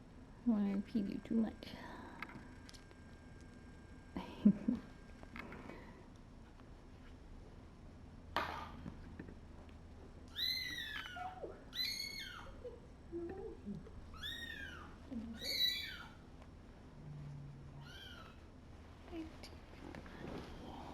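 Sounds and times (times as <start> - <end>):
kittens meowing: 10.3 - 12.7, 14.1 - 16.2, 17.8 - 18.4.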